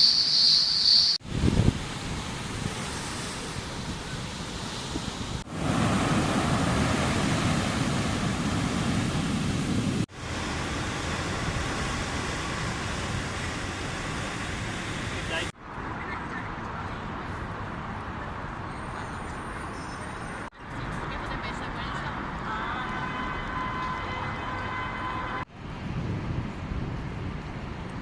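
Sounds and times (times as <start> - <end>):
ocean surf: 0.0 - 15.6
wind: 0.0 - 28.0
wind buffeting microphone: 1.2 - 15.1, 25.5 - 28.0.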